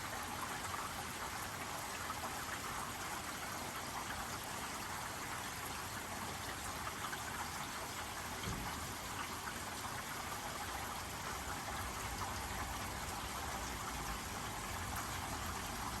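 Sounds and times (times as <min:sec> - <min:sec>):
steady rain falling: 0:07.6 - 0:16.0.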